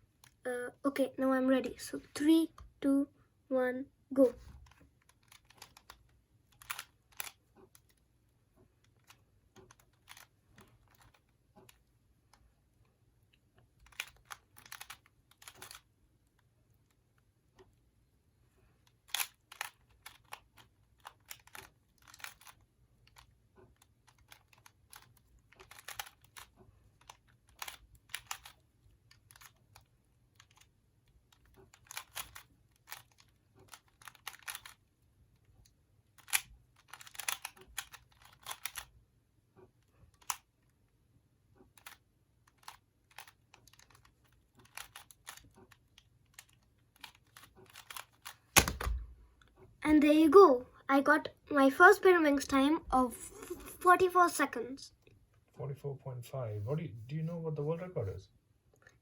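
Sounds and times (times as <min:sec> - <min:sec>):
plastic puzzle clicks and clacks: 0:04.4 - 0:12.4, 0:13.6 - 0:16.5, 0:18.8 - 0:34.9, 0:36.2 - 0:39.0, 0:40.0 - 0:40.6, 0:41.6 - 0:49.5.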